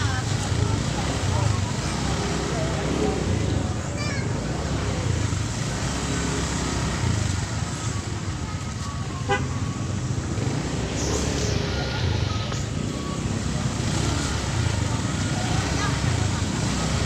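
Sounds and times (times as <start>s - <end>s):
motor vehicle rumble: 0.0s - 17.0s
horn toot: 9.2s - 9.8s.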